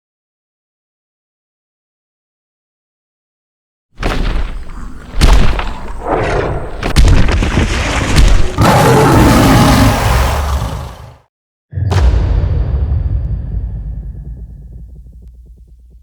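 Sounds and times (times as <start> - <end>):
giant heavy booming stomps: 4.0 - 8.6, 11.8 - 16.0
dense rumbling noise: 11.9 - 16.0.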